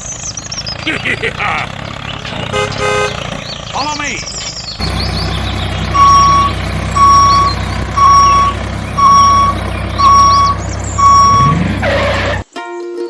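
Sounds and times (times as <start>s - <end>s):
engine hum: 0.0s - 12.5s
vehicle reversing alarm beeping: 4.8s - 12.4s.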